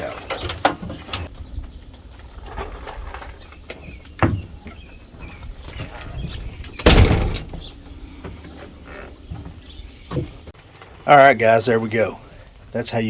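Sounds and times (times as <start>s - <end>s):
outdoor background noise: 0.0s - 13.0s.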